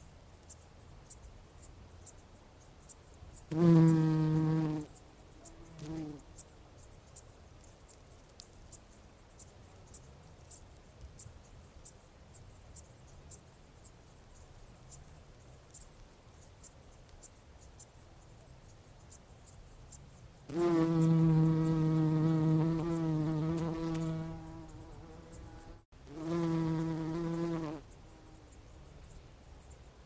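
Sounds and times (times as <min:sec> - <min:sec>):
bumblebee buzzing in flight: 0:03.5 - 0:04.9, 0:20.5 - 0:28.4.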